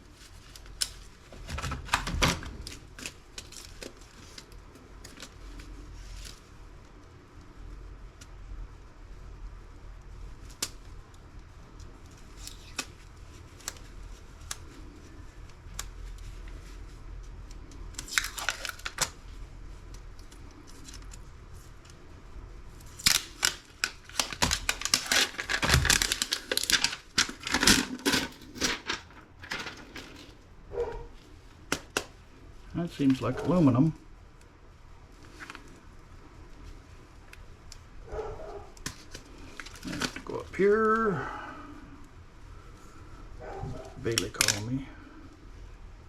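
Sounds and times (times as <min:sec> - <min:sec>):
tearing and crackling: 0:00.0 - 0:07.0, 0:11.7 - 0:22.0, 0:22.7 - 0:32.1, 0:38.1 - 0:41.1, 0:43.7 - 0:44.8
crinkling rip: 0:00.0 - 0:07.6, 0:10.2 - 0:22.0, 0:22.7 - 0:30.4, 0:35.1 - 0:41.2, 0:43.8 - 0:44.8.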